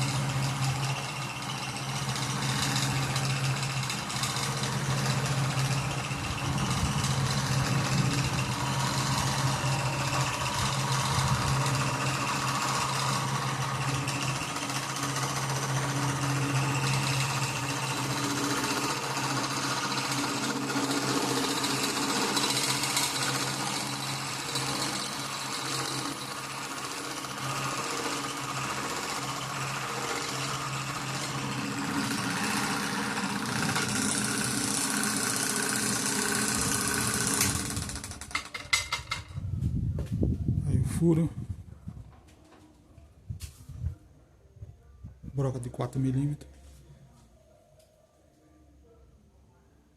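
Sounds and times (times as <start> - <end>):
drill press motor humming: 0.0 - 39.1.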